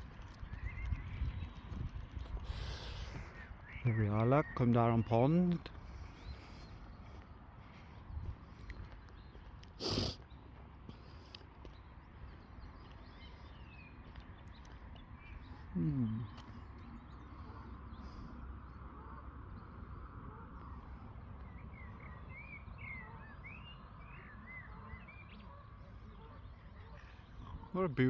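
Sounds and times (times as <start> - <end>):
low outdoor rumble: 0.0 - 27.7
small birds chirping: 0.0 - 28.0.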